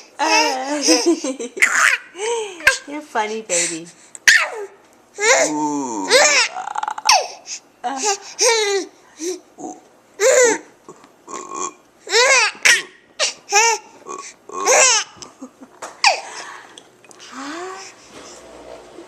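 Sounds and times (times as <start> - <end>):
baby laughing: 0.2 - 2.9, 6.1 - 8.8, 12.1 - 13.9, 14.6 - 16.4.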